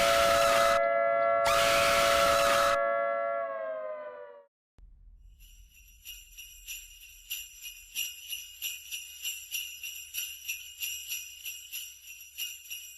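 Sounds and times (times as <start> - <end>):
jingle bells shaken rhythmically: 5.4 - 12.9.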